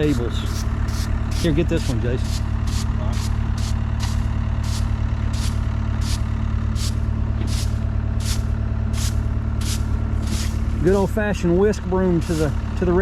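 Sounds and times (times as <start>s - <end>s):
whisk broom sweeping sawdust: 0.0s - 6.2s, 6.8s - 10.6s
engine idling: 0.0s - 13.0s.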